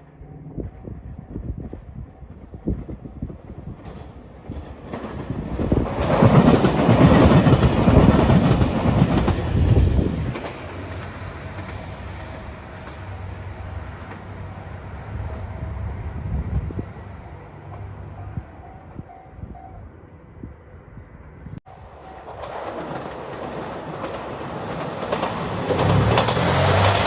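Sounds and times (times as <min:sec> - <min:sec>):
train wheels clattering over rails: 0:02.6 - 0:13.3, 0:21.8 - 0:27.0.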